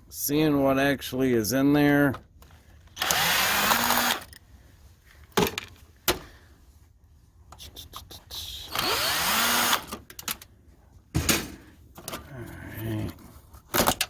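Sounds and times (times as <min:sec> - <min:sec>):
power drill spinning up: 0:03.0 - 0:04.3, 0:08.7 - 0:10.0.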